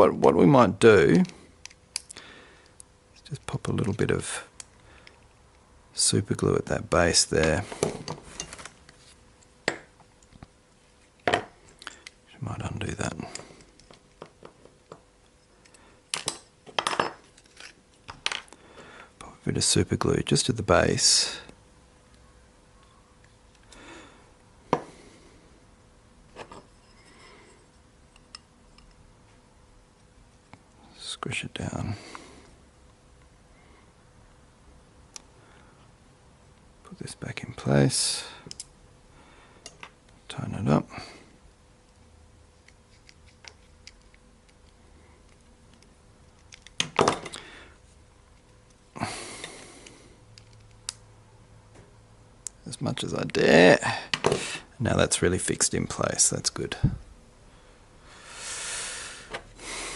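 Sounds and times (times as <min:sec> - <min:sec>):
screwdriver and small parts clicking: 0:42.6 - 0:47.0, 0:50.3 - 0:51.0.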